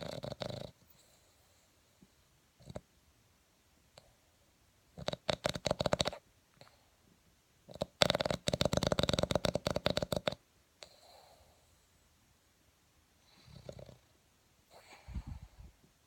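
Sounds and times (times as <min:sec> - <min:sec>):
dog snoring: 0:00.0 - 0:01.8, 0:02.6 - 0:02.8, 0:04.9 - 0:06.9, 0:07.7 - 0:11.9, 0:13.2 - 0:14.1, 0:14.7 - 0:15.6
dog breathing out softly: 0:14.7 - 0:15.8.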